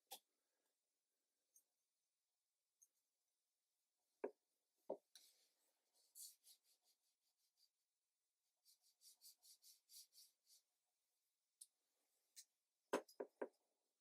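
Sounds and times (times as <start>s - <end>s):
brush strokes scratching on paper: 5.2s - 10.9s.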